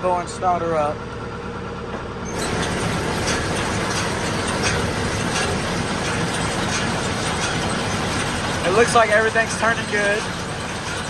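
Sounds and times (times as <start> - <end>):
tractor engine: 0.0 - 11.0
baler mechanical clatter: 2.2 - 11.0.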